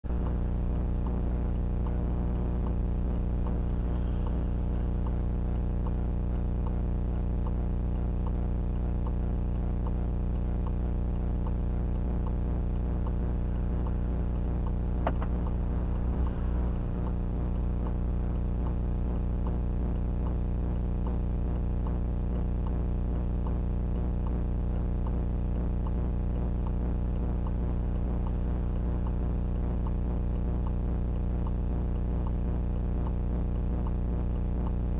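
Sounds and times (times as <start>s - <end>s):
electrical hum and buzz: 0.0s - 34.9s
faint regular ticking: 0.1s - 34.9s
sharp click: 14.6s - 17.2s.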